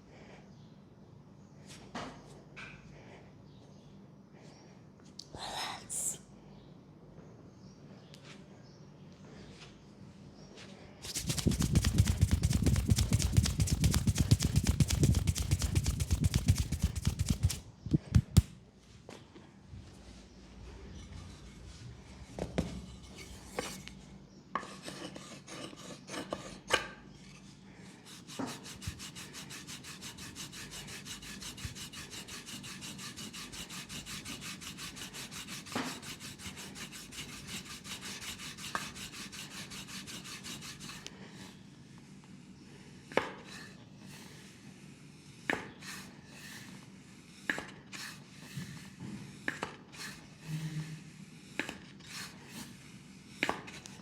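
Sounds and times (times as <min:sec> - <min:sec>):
hands rubbing skin: 0:11.0 - 0:18.6
sharp taps: 0:11.1 - 0:18.6.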